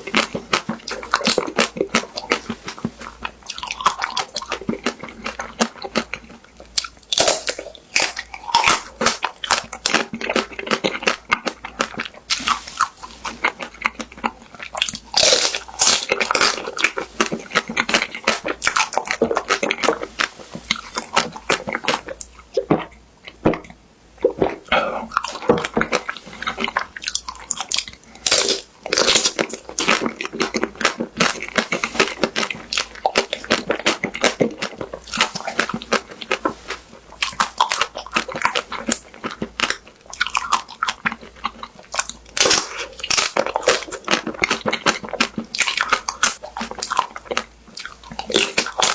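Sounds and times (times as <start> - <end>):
wet chewing: 0.0 - 48.9.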